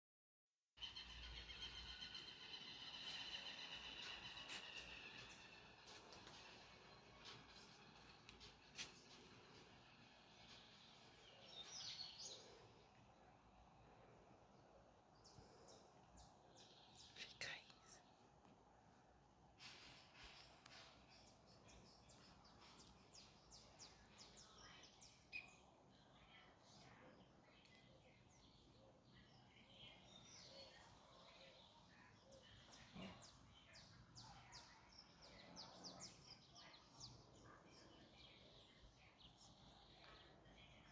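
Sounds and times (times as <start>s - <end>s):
birds chirping: 0.8s - 18.2s.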